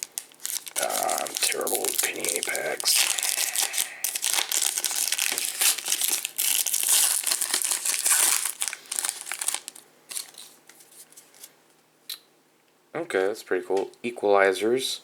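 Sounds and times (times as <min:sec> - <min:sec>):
foil wrapper crinkling: 0:00.0 - 0:11.6.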